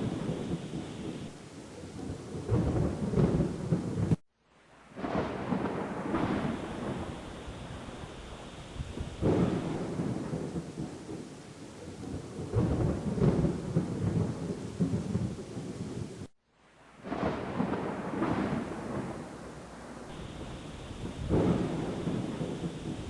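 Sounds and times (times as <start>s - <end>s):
thunder rumbling: 0.0s - 4.2s, 4.9s - 16.3s, 17.0s - 23.0s
rain hissing: 0.0s - 23.0s.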